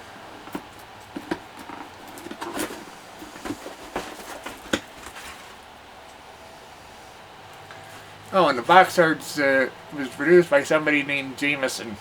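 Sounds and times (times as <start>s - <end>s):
cardboard box taps and rustles: 0.6s - 5.4s.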